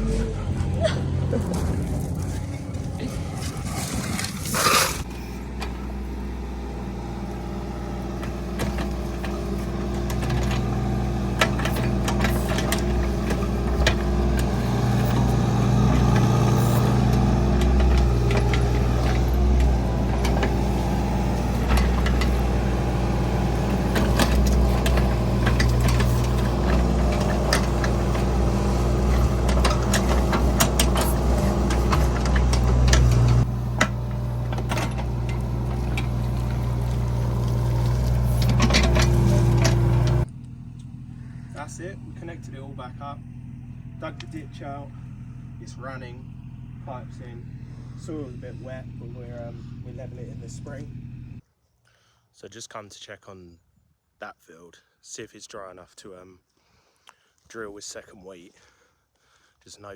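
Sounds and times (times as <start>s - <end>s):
digger engine running: 0.0s - 51.4s
knocks and clatter from digging: 1.4s - 6.0s, 7.5s - 40.3s.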